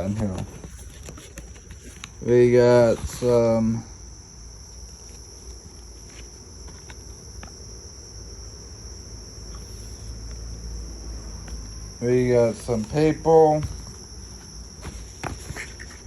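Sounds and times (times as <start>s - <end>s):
packaging rustling and clicking: 0.1s - 2.2s.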